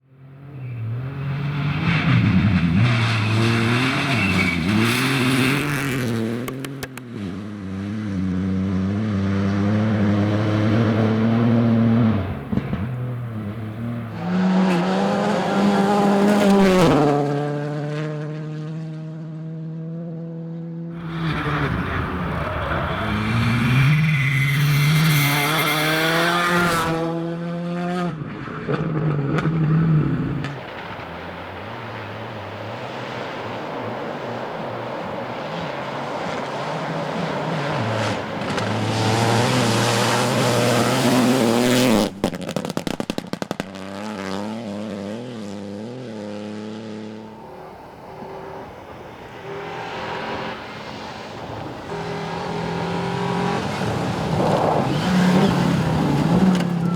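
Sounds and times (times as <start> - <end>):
rally car engines revving: 0.1 - 56.9
sharp cracks: 42.0 - 43.8.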